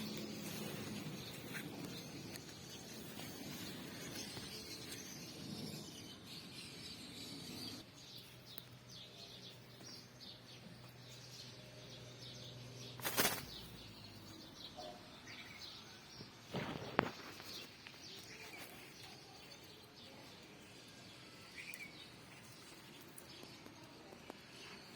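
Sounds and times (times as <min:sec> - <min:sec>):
wild birds chirping: 0:00.0 - 0:24.9
loud rustling bursts: 0:13.0 - 0:13.8.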